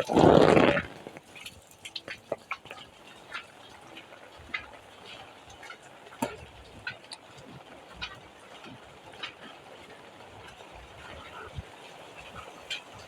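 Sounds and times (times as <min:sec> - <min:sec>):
rain hiss: 0:00.0 - 0:01.4
drips tapping: 0:00.0 - 0:13.0.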